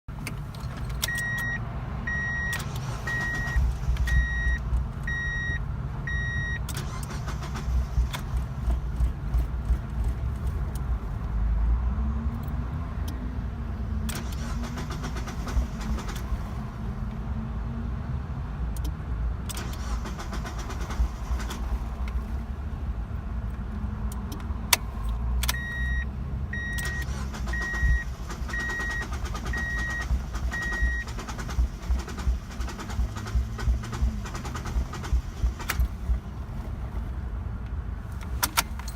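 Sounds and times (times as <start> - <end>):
car engine cranking: 0.1 - 11.4, 14.0 - 16.9, 18.8 - 38.9
car warning chime beeping: 0.7 - 7.5, 25.4 - 36.2.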